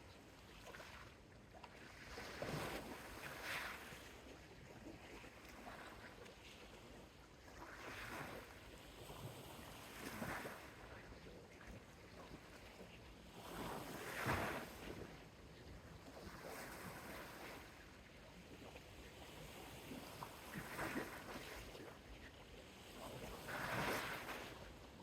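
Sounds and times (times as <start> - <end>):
soft sea waves washing onto beach: 13.2 - 25.0.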